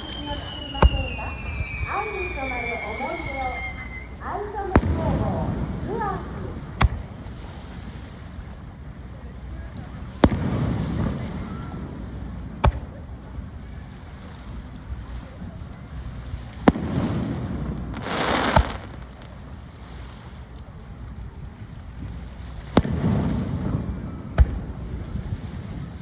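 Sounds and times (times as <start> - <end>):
fireworks shells bursting: 0.0 - 6.0
crackling hiss: 0.0 - 26.0
low rumble of fireworks display: 0.0 - 26.0.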